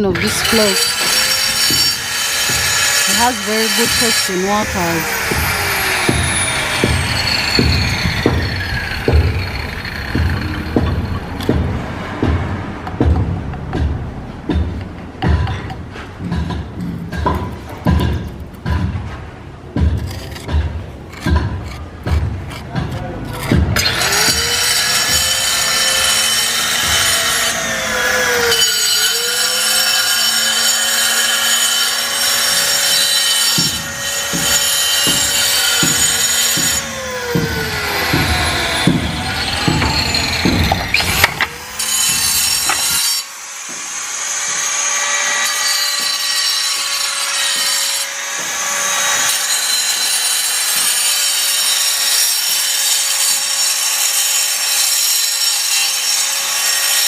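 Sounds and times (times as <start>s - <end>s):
angle grinder cutting stone: 0.0s - 11.5s, 22.4s - 57.0s
low thumps: 5.0s - 23.8s, 33.6s - 42.9s.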